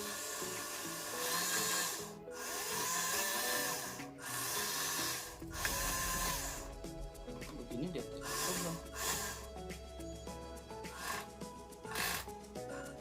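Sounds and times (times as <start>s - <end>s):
toy truck motor whirring and grinding: 0.0s - 6.4s, 8.2s - 9.5s, 10.9s - 13.0s.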